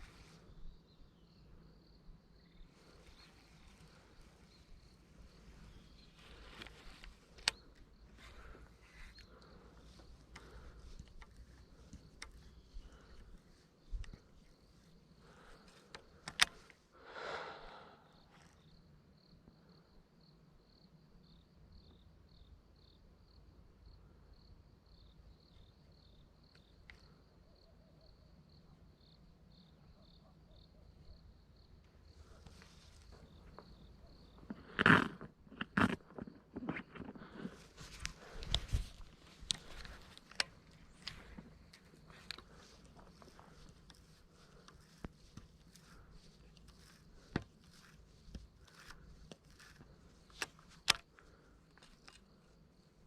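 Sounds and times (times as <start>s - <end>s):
cricket chirping: 0.0s - 53.0s
sharp clicks: 15.6s - 16.8s
handling rustle: 37.2s - 52.7s.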